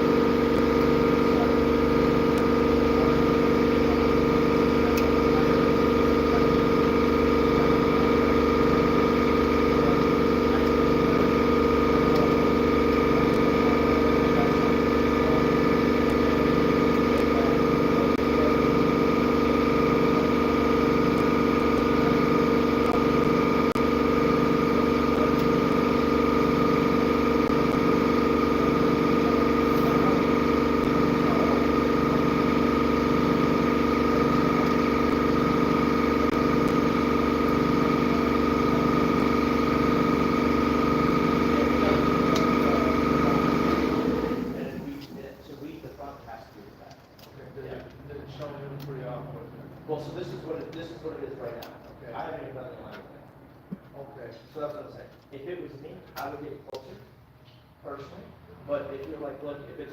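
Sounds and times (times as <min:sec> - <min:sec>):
engine idling with whine: 0:00.0 - 0:46.4.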